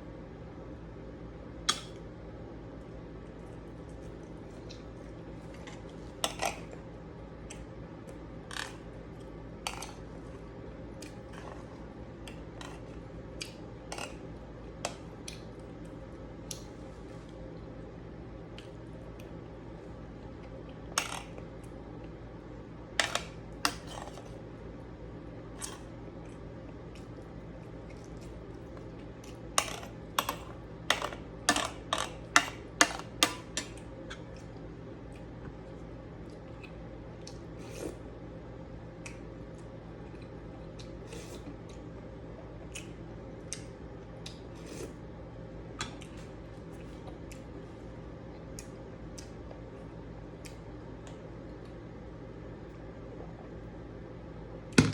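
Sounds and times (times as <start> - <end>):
steady low hum: 0.0 - 54.9.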